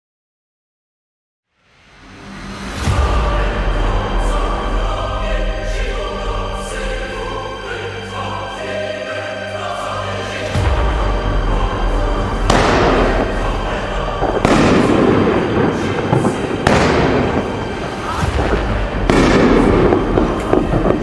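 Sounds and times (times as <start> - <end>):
firework hiss: 12.2 - 21.0
firework shots bursting: 12.2 - 21.0.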